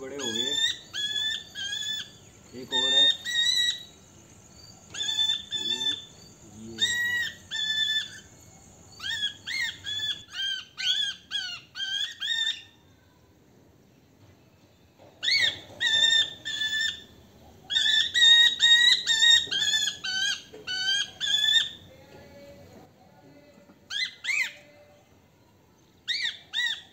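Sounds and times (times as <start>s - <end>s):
parrot chicks shrill calls: 0.0s - 12.8s, 15.2s - 21.9s, 23.9s - 24.6s, 26.0s - 26.9s.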